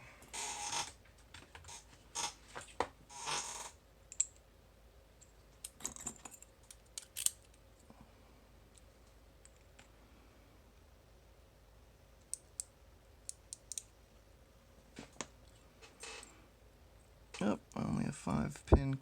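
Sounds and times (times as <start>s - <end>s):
padlock parts clicking and rattling: 5.6s - 7.6s.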